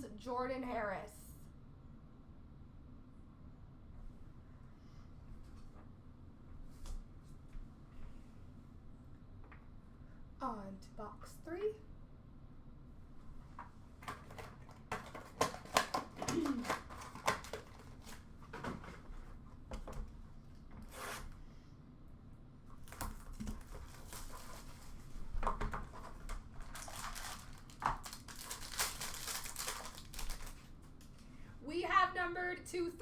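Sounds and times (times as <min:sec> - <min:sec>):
packaging tearing and crinkling: 0:14.0 - 0:18.7, 0:22.8 - 0:25.0, 0:25.8 - 0:31.1
cards clicking and rustling: 0:14.0 - 0:19.0, 0:22.8 - 0:31.2.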